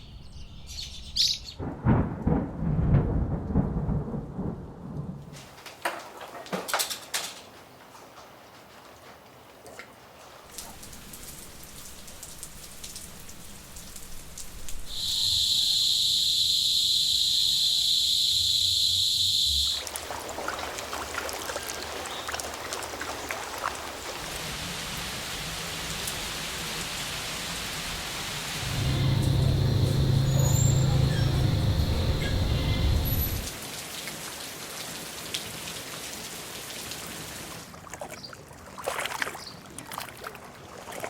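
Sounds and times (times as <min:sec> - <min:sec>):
rain patter: 0:01.6 - 0:15.4, 0:19.7 - 0:37.8
faint water drips: 0:10.5 - 0:15.2, 0:19.7 - 0:24.5
high-pitched whine: 0:28.5 - 0:33.5.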